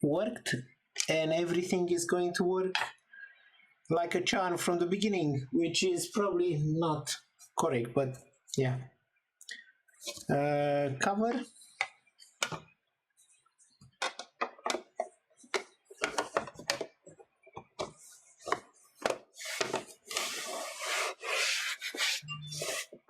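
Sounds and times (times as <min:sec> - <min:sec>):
plastic rubbing scrape: 0:17.8 - 0:23.0.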